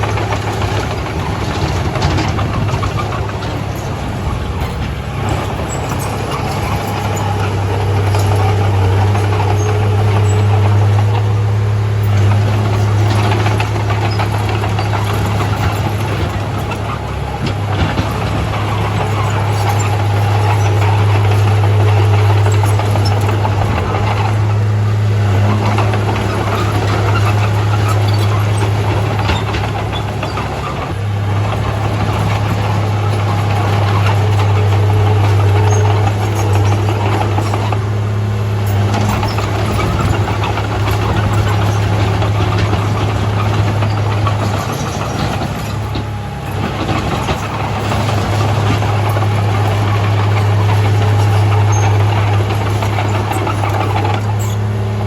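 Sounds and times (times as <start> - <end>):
diesel machinery engine humming: 0.0 - 55.0.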